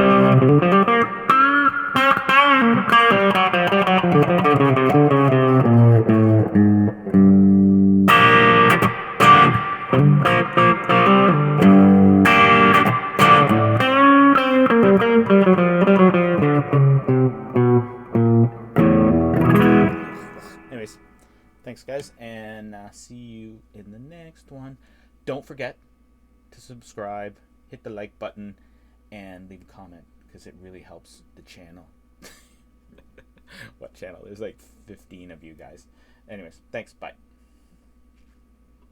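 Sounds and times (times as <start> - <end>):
overdriven electric guitar: 0.0 - 21.0.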